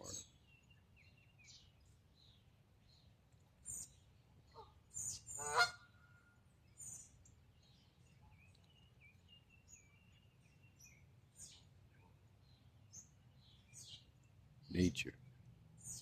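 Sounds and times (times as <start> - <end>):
faint small bird chirping: 0.0 - 16.0
goose honk: 5.4 - 5.8.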